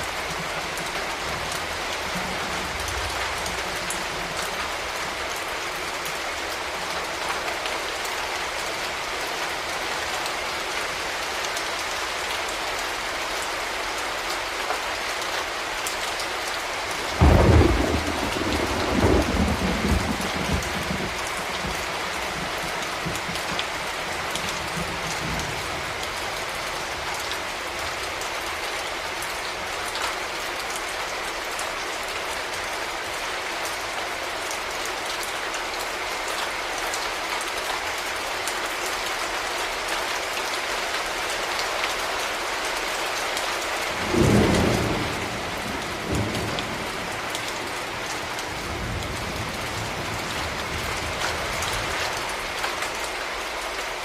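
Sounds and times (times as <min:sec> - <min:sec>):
heavy rain falling: 0:00.0 - 0:54.0
thunder rumbling: 0:17.2 - 0:23.6, 0:44.0 - 0:52.0.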